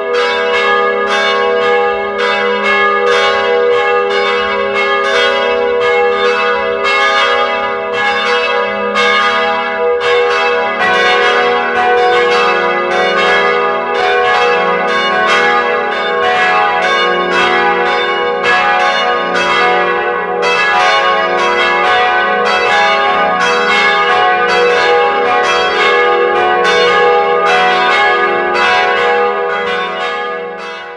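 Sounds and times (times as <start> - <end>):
church bells pealing: 0.0 - 30.9.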